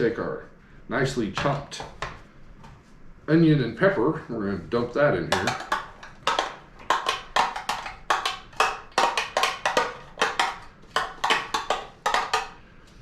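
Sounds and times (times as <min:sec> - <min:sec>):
container tapping on bowl: 0:05.3 - 0:12.6.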